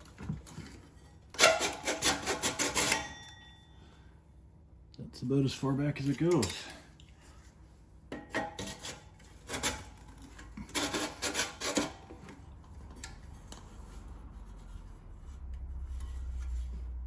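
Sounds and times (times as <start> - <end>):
exhaust tip scraping against tailpipe: 13.2 - 17.0.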